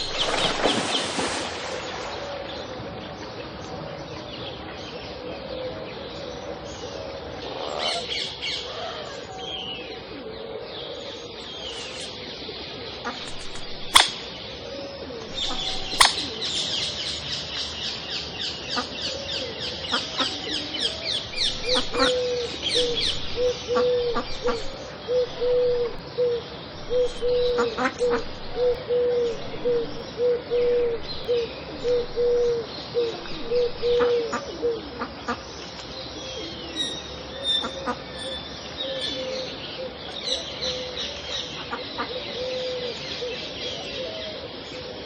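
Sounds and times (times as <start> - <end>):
short low bird calls: 0.0 - 3.2, 6.5 - 17.3, 18.8 - 35.1
background hiss: 0.0 - 3.8, 6.2 - 45.0
sharp clicks: 13.3 - 14.2
high repeated bird chirping: 26.8 - 28.8.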